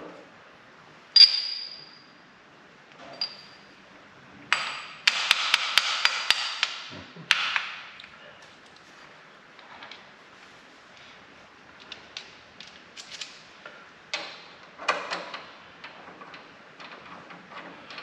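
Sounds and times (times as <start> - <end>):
metal parts clanking: 1.2 - 2.0.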